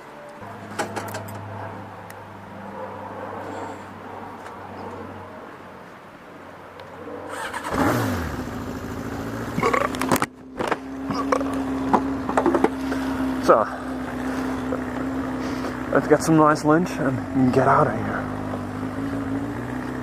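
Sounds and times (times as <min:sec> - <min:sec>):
motorcycle engine starting and idling: 0:07.2 - 0:20.0.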